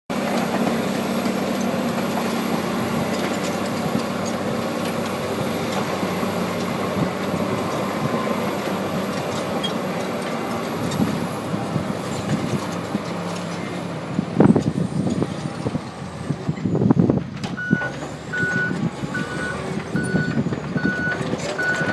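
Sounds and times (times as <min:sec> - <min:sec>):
bulldozer diesel engine running: 0:00.1 - 0:21.9.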